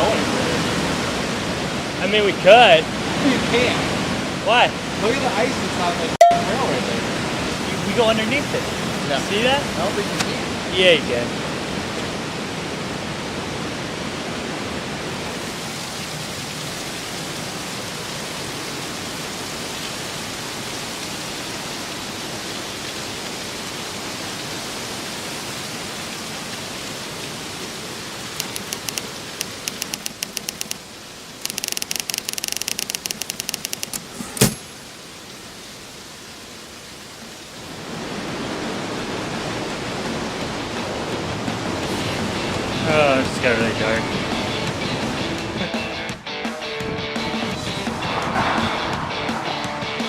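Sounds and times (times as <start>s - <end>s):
waterfall rushing: 0.0s - 45.6s
rapid clicking: 28.4s - 30.8s, 31.4s - 34.0s.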